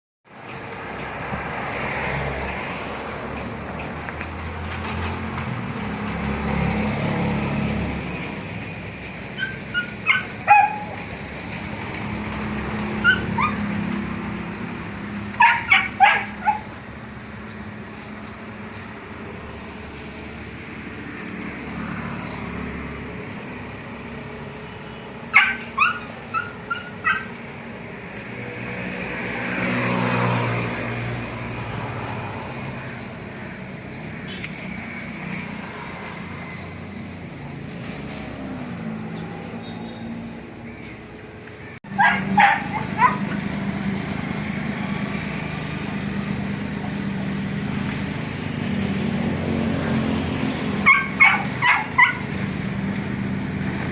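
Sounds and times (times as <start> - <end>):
dog barking: 9.5 - 11.0, 13.0 - 13.7, 15.4 - 16.7, 25.3 - 27.4, 41.9 - 43.4, 50.8 - 52.5
low engine hum: 40.3 - 53.9.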